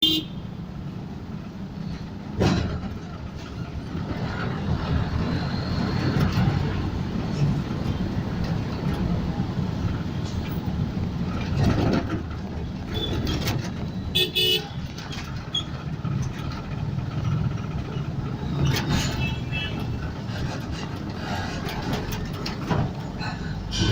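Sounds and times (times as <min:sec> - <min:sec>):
vehicle horn toots: 0:00.0 - 0:00.4, 0:14.1 - 0:14.8
street traffic rumble: 0:00.0 - 0:23.9.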